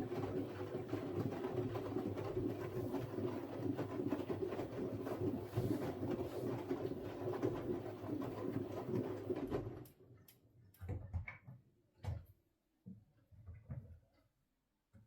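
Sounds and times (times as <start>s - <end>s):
washing machine humming: 0.0s - 9.9s.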